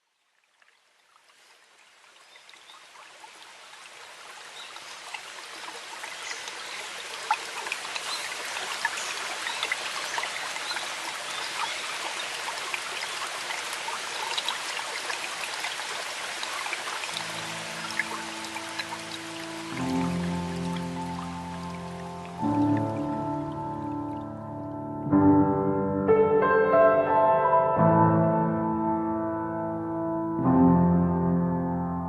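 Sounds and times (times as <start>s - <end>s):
rushing water with droplet ticks: 0.0s - 24.4s.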